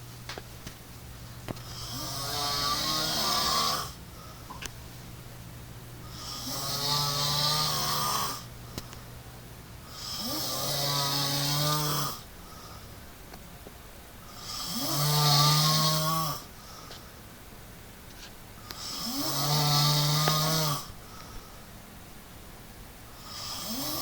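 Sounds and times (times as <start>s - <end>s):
quiet breathing: 1.5s - 5.2s, 12.2s - 13.1s, 16.4s - 17.3s, 20.2s - 22.0s
man snoring: 1.7s - 4.0s, 6.0s - 8.5s, 9.9s - 12.3s, 14.3s - 16.5s, 18.8s - 21.0s, 23.2s - 24.0s.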